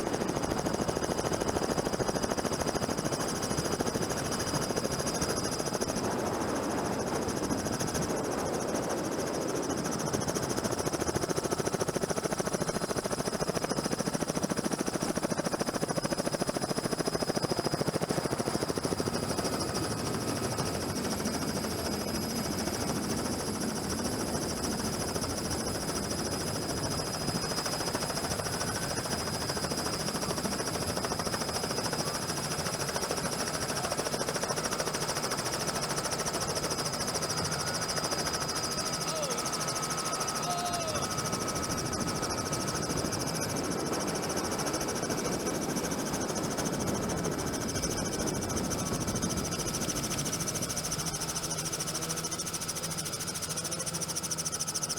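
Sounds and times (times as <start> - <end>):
helicopter rotor chop: 0.0 - 54.9.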